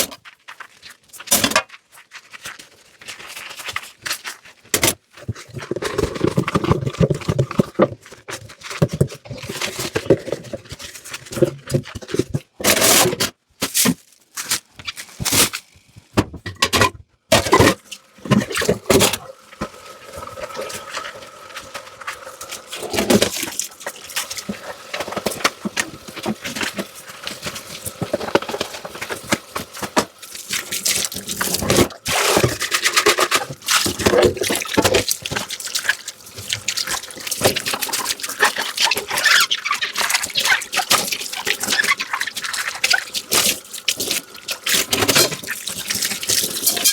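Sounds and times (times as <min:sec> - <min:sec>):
water running and splashing: 0:17.8 - 0:46.9.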